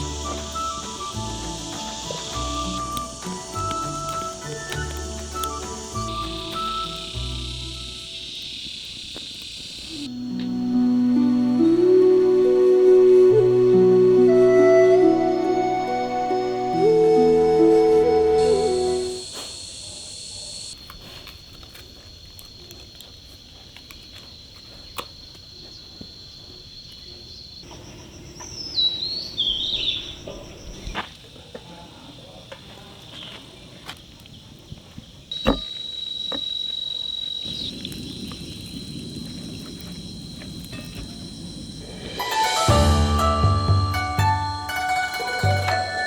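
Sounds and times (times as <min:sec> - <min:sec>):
bird chirping: 0:00.0 - 0:10.2, 0:26.9 - 0:31.0
insects trilling: 0:00.0 - 0:46.0.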